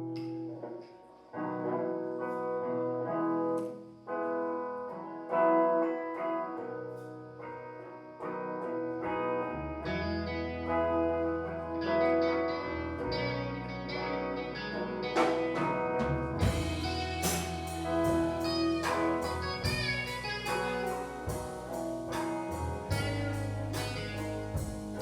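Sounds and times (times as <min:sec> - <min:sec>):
guitar chords ringing: 0:09.8 - 0:25.0.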